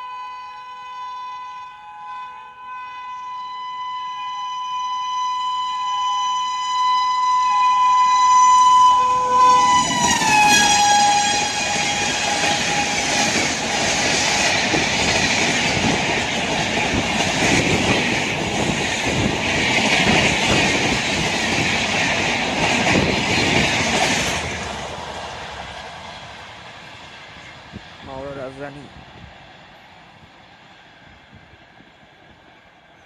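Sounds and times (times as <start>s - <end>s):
locomotive horn: 0.0s - 13.6s
train wheel clatter: 9.7s - 29.3s.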